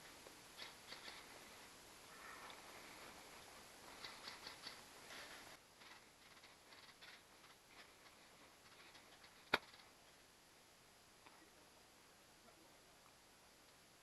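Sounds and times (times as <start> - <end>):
faint rustling: 0.0 - 10.2
small clicks: 0.2 - 1.3, 3.9 - 4.8
sharp crack: 3.9 - 4.8, 8.8 - 10.0.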